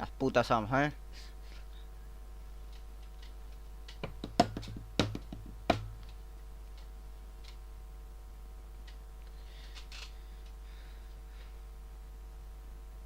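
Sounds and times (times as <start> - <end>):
faint steady hum: 0.0 - 13.0
sharp knocks: 4.0 - 6.1.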